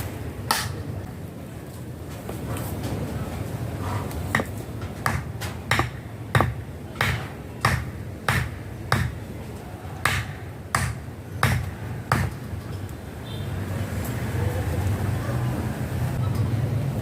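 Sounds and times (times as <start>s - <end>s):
hammering: 4.3s - 9.2s, 10.1s - 12.4s.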